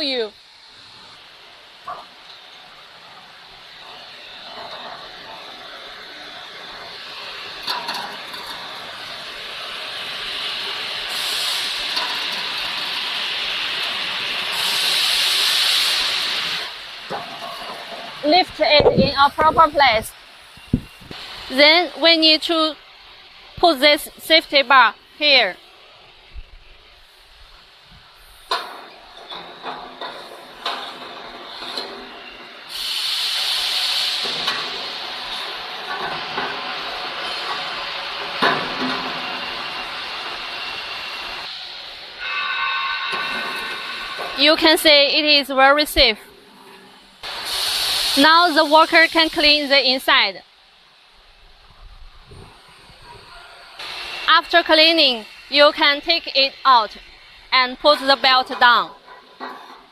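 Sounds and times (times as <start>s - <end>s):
machine hissing: 0.3s - 45.1s, 46.2s - 51.4s, 52.1s - 59.1s
sharp high hiss: 8.9s - 29.1s, 32.2s - 36.0s, 46.9s - 58.8s.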